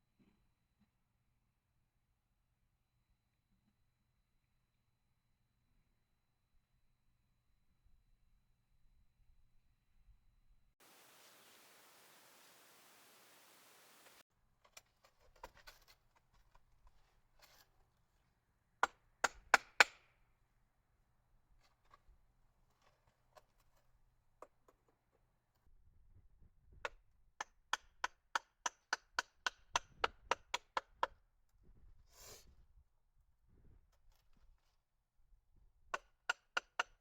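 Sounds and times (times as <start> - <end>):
short rustle: 10.8 - 14.2.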